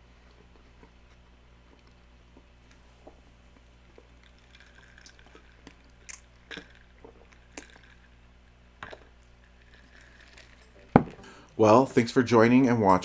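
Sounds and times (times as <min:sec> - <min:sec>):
person chewing: 0:00.2 - 0:08.2.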